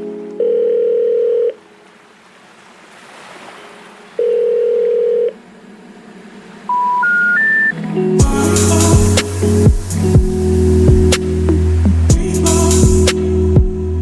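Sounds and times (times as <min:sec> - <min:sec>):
electronic beeps: 0:06.7 - 0:07.8
soft surf-like hiss: 0:07.8 - 0:13.3.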